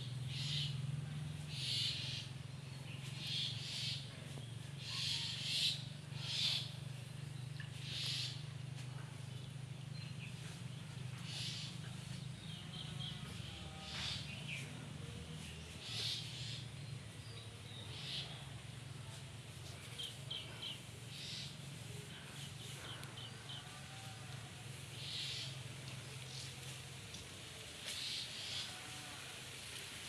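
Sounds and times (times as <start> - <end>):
birds calling: 0.2 - 14.8.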